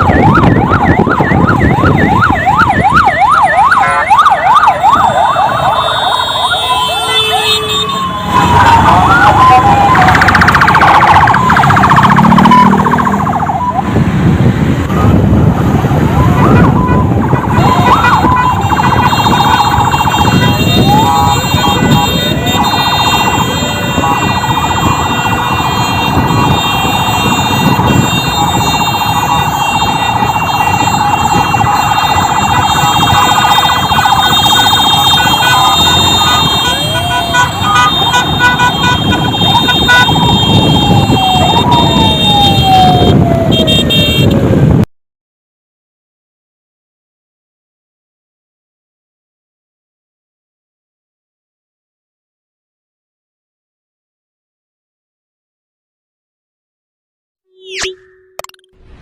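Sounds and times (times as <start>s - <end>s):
ambulance siren yelping: 0.0s - 14.0s, 14.9s - 44.2s
vehicle engine and road noise: 0.0s - 44.9s, 57.5s - 59.0s.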